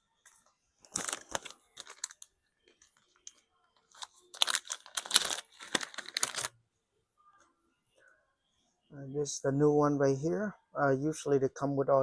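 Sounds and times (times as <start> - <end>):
plastic packaging crinkling: 0.8 - 6.6.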